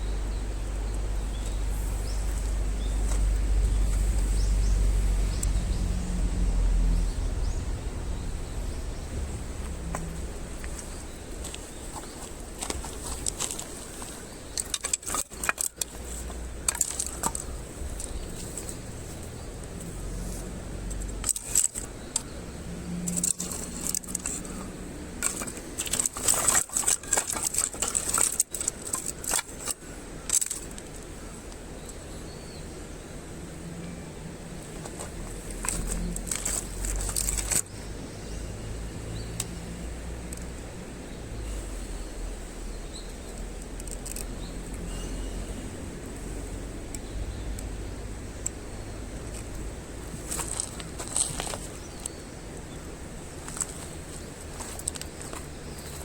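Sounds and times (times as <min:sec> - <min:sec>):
steady low rumble: 0:00.0 - 0:14.9
light clicks and clatter: 0:09.6 - 0:32.0, 0:34.7 - 0:37.9, 0:42.9 - 0:45.0, 0:46.1 - 0:56.0.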